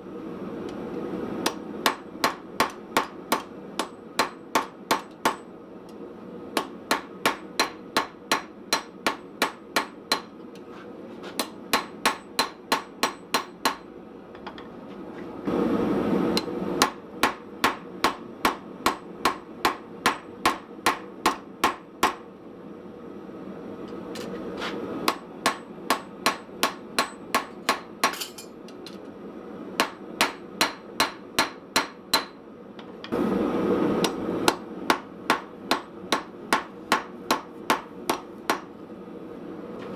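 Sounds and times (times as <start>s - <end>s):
hammer striking steel on anvil: 1.4s - 5.5s, 6.6s - 10.4s, 11.4s - 13.9s, 16.4s - 22.2s, 25.1s - 28.9s, 29.8s - 32.4s, 34.0s - 38.7s.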